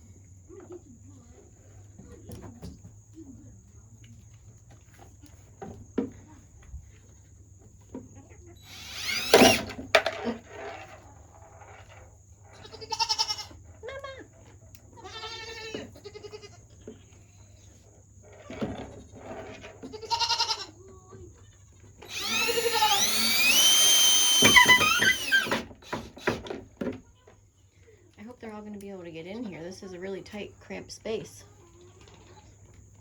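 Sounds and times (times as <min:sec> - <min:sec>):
power drill whining: 0:08.6 - 0:12.0, 0:22.0 - 0:26.6
goats bleating: 0:12.6 - 0:13.6, 0:19.9 - 0:20.8.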